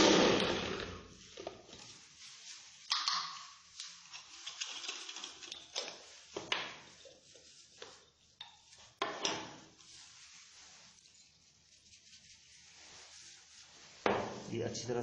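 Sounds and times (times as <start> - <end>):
grinder rattling and scraping: 0.0 - 1.0.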